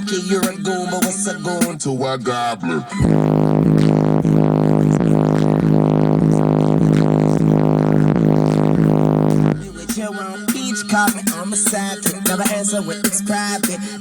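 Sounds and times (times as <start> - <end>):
car stereo playing rap through subwoofers: 0.0 - 14.0
loud buzzing drone with pulse: 3.0 - 10.0.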